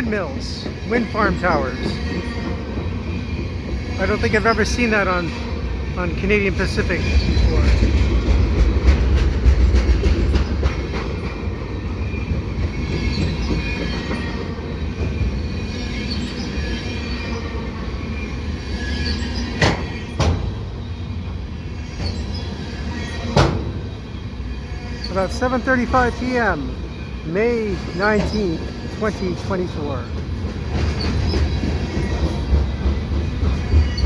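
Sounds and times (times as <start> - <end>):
steel wheels rumbling on rail: 0.0 - 34.0
wheel squeal: 12.2 - 21.0, 21.8 - 25.3.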